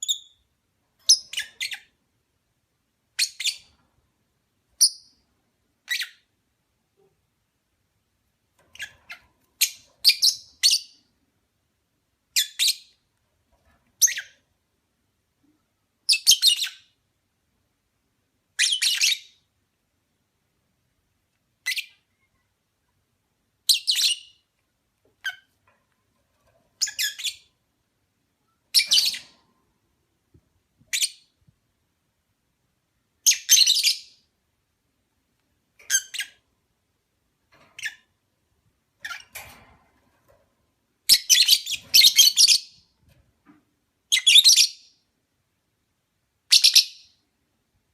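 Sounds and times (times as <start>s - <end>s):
lovebird chirping: 0.0s - 0.5s, 1.1s - 2.0s, 3.1s - 3.7s, 4.8s - 5.2s, 5.8s - 6.3s, 8.7s - 11.1s, 12.3s - 13.0s, 14.0s - 14.4s, 16.0s - 17.0s, 18.6s - 19.4s, 21.6s - 22.5s, 23.6s - 24.5s, 25.2s - 25.5s, 26.8s - 27.5s, 28.4s - 29.4s, 30.9s - 31.4s, 33.2s - 34.3s, 35.9s - 36.4s, 41.0s - 42.9s, 44.1s - 45.0s, 46.5s - 47.2s.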